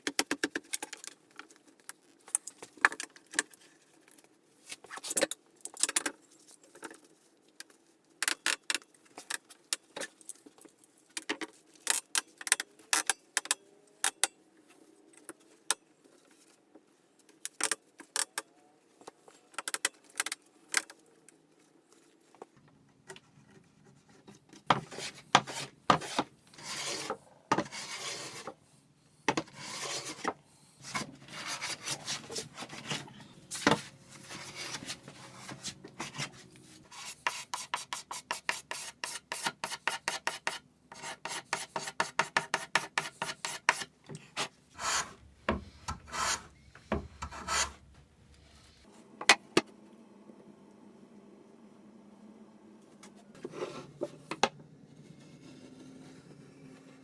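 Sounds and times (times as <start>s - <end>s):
rubbing and scraping: 23.3s - 28.6s, 29.4s - 47.9s.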